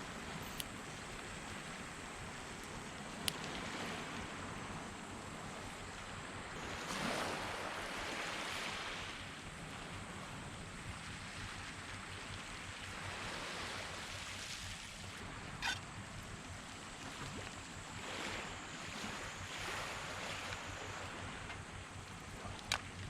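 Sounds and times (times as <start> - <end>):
small waves washing onto beach: 0.0 - 23.0.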